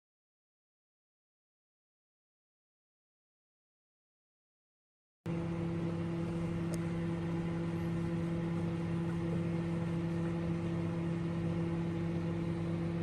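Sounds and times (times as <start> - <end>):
microwave oven humming: 5.3 - 13.0.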